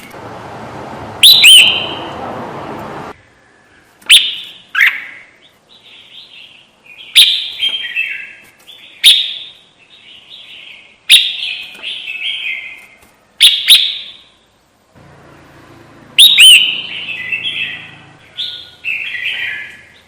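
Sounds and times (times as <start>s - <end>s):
bird calling and chattering: 1.2s - 2.1s, 16.2s - 20.0s.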